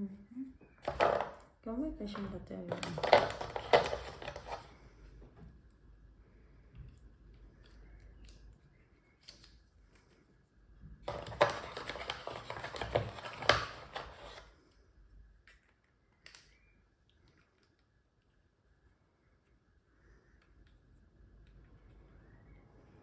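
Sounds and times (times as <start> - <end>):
packaging crinkling and clicking: 2.7 - 4.7, 11.0 - 14.5.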